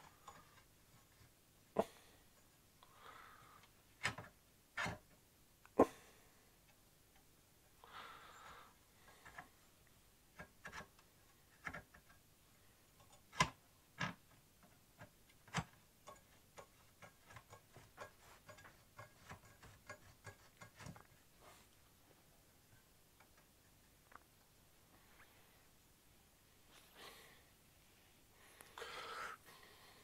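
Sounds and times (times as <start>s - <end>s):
clicks and knocks of tools: 0.0s - 1.3s, 12.9s - 21.2s.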